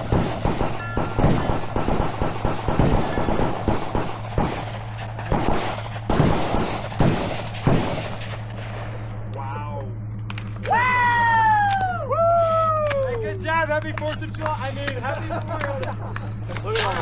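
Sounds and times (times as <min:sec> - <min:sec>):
rapid gunshots: 0:00.0 - 0:09.0
steady low hum: 0:00.0 - 0:17.0.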